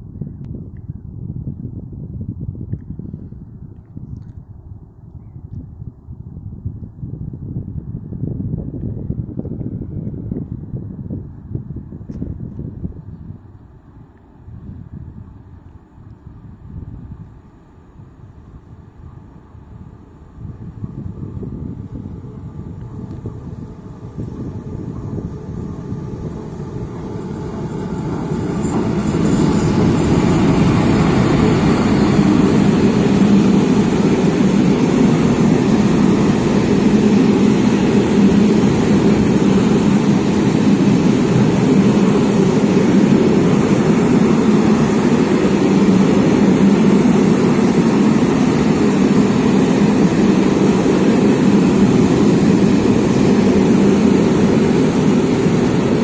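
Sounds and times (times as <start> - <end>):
freight train passing: 15.2 - 56.0
wheels rumbling on rails: 16.2 - 56.0.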